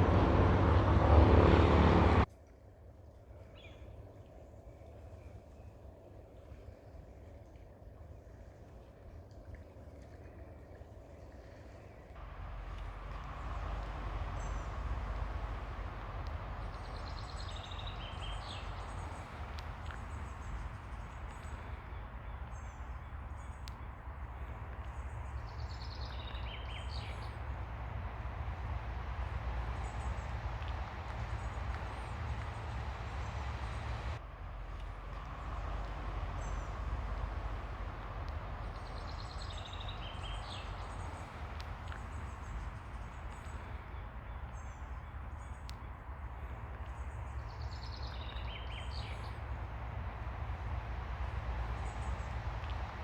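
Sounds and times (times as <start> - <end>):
low rumble: 0.0 - 2.3, 12.2 - 43.8, 46.3 - 53.0
ocean surf: 0.0 - 2.3.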